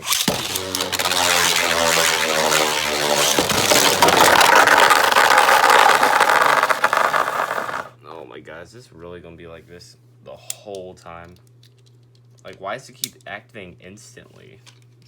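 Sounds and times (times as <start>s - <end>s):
spinning tops scraping rattle: 0.0s - 7.9s
spinning tops whirring: 0.0s - 7.9s.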